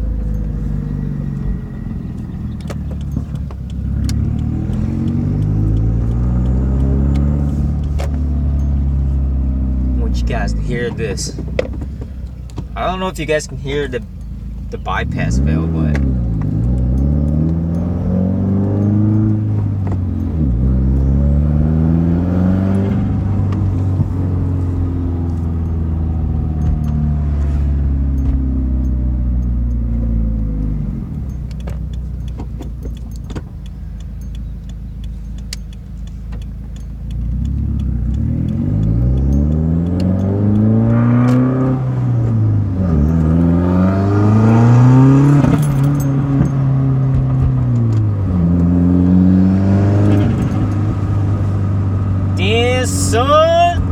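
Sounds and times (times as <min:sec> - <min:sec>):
car engine accelerating through gears: 0:00.0 - 0:53.9.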